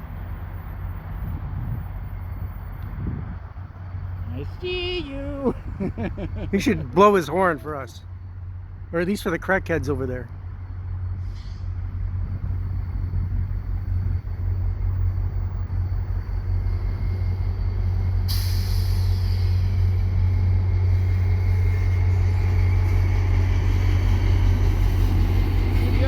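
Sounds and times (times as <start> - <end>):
diesel locomotive engine drone: 0.0 - 26.0.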